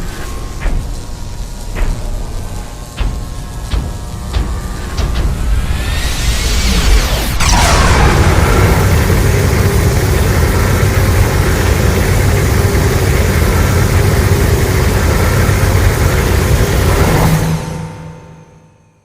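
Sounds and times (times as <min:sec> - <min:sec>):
rushing hiss: 0:00.0 - 0:17.4
monster rumble: 0:04.4 - 0:17.5.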